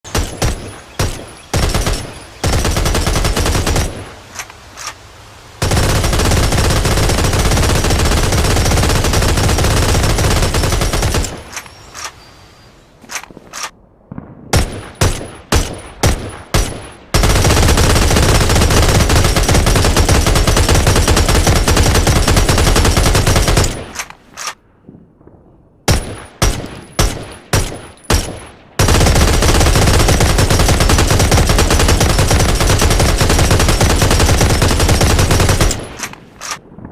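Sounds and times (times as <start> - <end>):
automatic gunfire burst: 0.1 - 4.0, 5.6 - 11.5, 14.6 - 24.1, 25.9 - 36.6.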